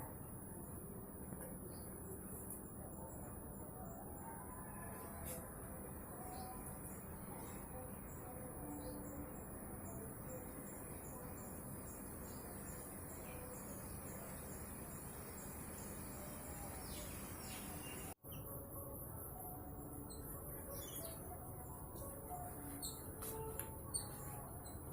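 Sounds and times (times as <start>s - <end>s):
insects trilling: 2.0s - 21.6s.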